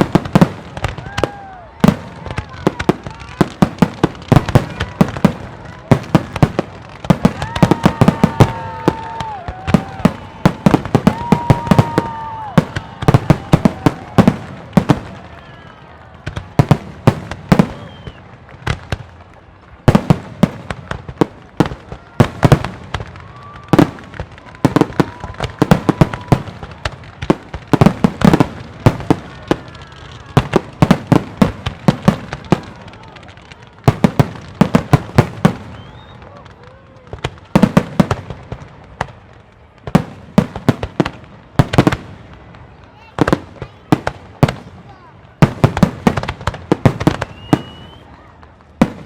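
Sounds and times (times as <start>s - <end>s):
whistling fireworks: 0.0s - 49.0s.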